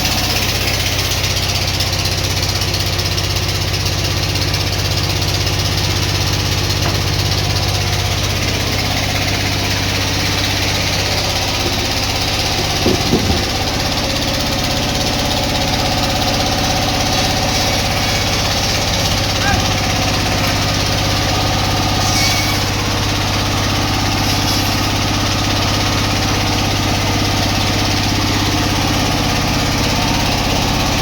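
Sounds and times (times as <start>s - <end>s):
sawmill machinery drone: 0.0s - 31.0s
clattering knocks: 6.6s - 7.6s, 11.1s - 13.8s, 17.0s - 20.9s.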